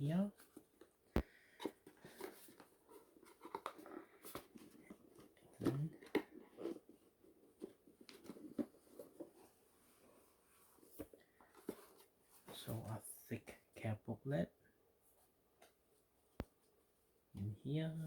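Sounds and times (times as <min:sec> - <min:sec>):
paper packaging rustling: 0:00.4 - 0:12.8.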